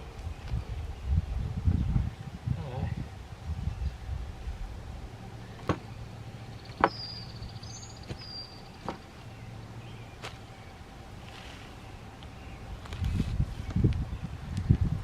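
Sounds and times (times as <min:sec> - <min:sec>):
bird chirping: 0:05.2 - 0:14.4.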